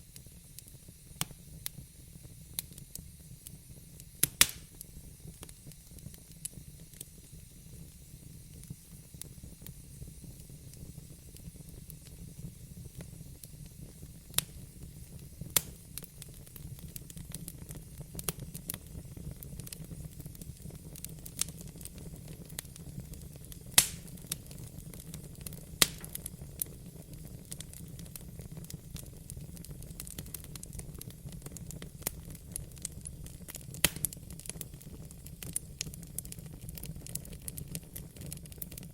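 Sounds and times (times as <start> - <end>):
campfire crackling: 2.5 - 38.9
sharp pops: 4.2 - 4.7, 23.8 - 24.1, 25.8 - 26.2.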